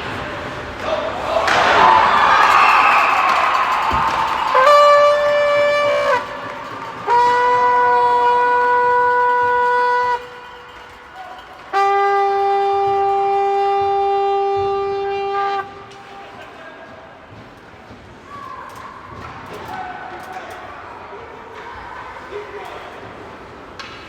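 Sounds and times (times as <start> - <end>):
horn blasts: 2.3 - 16.5.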